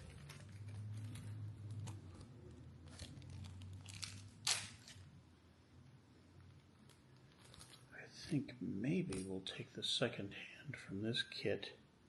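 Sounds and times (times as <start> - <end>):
packaging crinkling and tearing: 0.0 - 5.1, 6.6 - 7.9.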